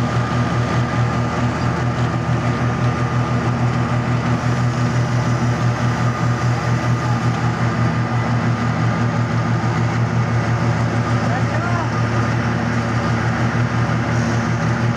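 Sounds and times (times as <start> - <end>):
construction machine engine running: 0.0 - 14.9.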